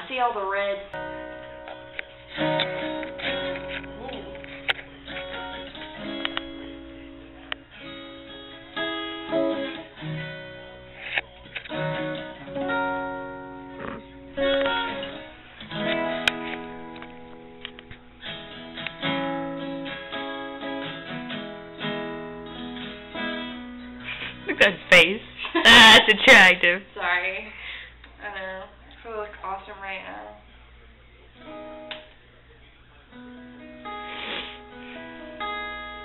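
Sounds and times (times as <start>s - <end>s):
acoustic guitar chords: 0.9s - 26.6s, 33.0s - 36.0s.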